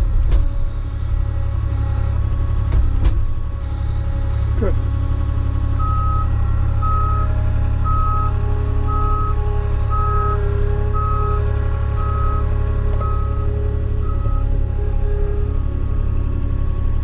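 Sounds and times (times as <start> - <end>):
diesel engine rumble: 0.0 - 17.0
reversing alarm beeping: 0.7 - 2.2, 5.8 - 15.5.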